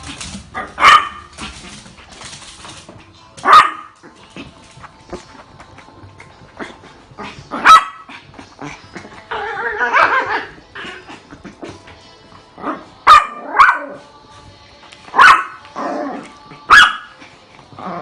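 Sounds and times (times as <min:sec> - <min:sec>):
small dogs barking and yipping: 0:00.6 - 0:01.8, 0:03.4 - 0:04.2, 0:07.6 - 0:08.3, 0:15.2 - 0:15.6, 0:16.7 - 0:17.2.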